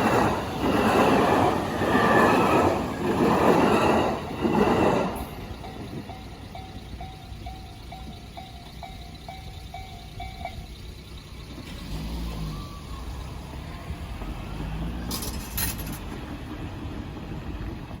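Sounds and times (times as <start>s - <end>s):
level crossing warning bell: 0.0s - 11.7s
vehicles driving over crossing: 0.0s - 18.0s.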